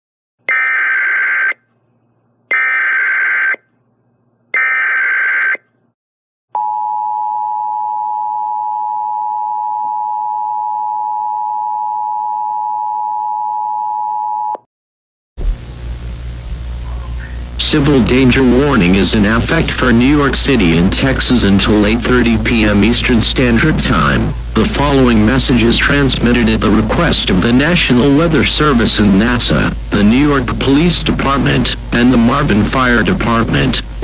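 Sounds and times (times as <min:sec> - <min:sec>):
data header tone bursts: 0:16.8 - 0:34.0.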